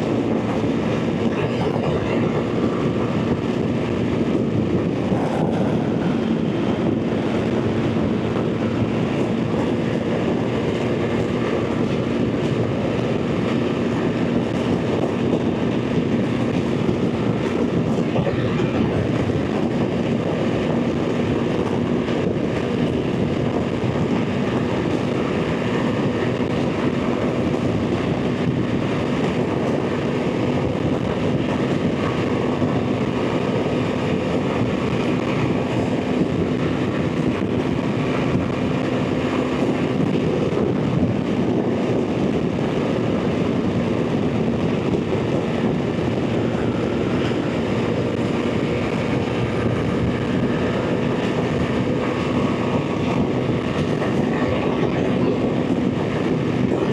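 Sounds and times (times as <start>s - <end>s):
road noise: 0.0s - 56.9s
wind rush: 0.0s - 56.9s
motorcycle engine drone: 30.0s - 56.9s.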